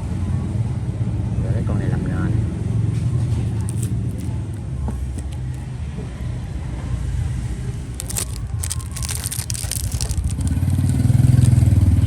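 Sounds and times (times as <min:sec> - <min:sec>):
road traffic rumble: 0:03.0 - 0:12.0
dense crackling crinkling: 0:03.6 - 0:04.4, 0:07.8 - 0:12.0.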